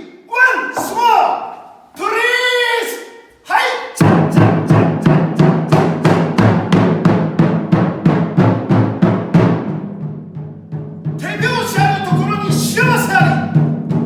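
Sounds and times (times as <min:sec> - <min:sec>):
taiko drums struck in fast rhythm: 0:04.0 - 0:14.0.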